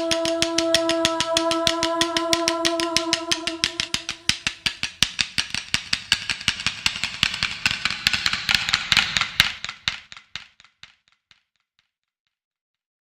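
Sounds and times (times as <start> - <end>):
fast sharp clicks: 0.0 - 10.2.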